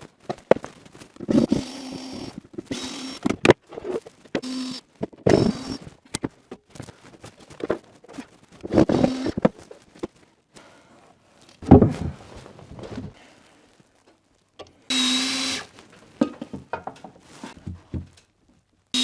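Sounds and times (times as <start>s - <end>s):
power drill running: 1.3s - 3.5s, 4.4s - 5.9s, 8.7s - 9.4s, 14.9s - 15.7s.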